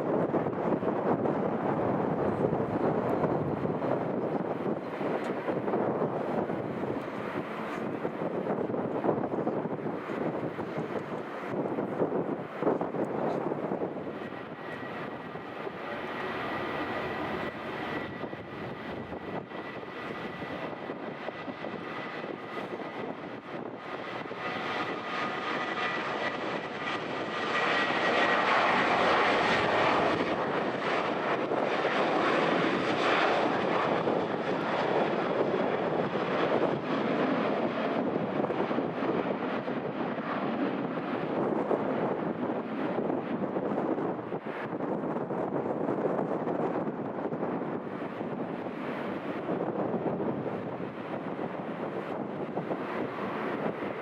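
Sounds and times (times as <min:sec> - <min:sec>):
jet engine whine: 0:00.0 - 0:54.0.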